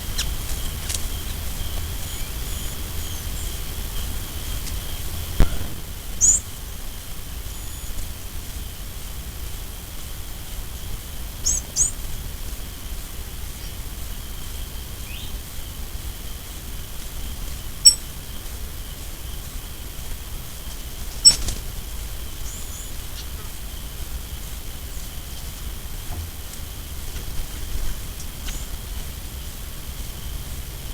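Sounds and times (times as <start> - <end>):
high insect drone: 0.0 - 30.9
high-pitched bird chirps: 5.4 - 6.4, 21.2 - 21.5.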